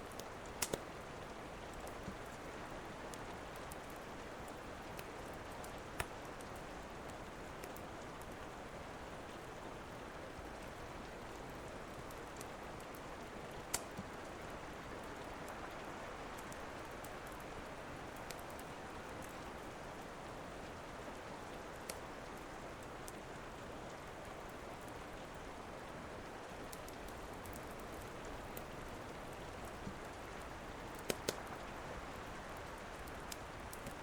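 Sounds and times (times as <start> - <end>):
wood fire popping: 0.0 - 1.0, 3.1 - 6.7, 13.6 - 14.2, 26.6 - 31.6, 32.6 - 34.0
steady rain: 0.0 - 34.0.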